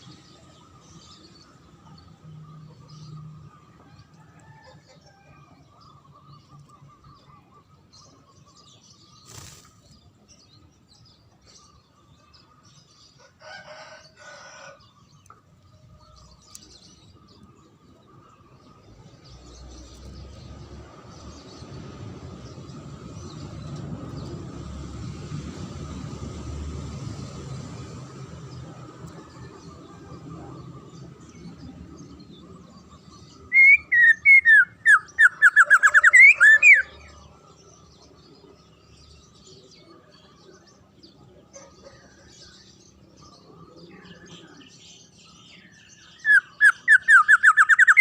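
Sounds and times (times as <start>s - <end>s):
songbirds chirping: 0.0s - 48.0s
rooster crowing: 13.3s - 14.8s.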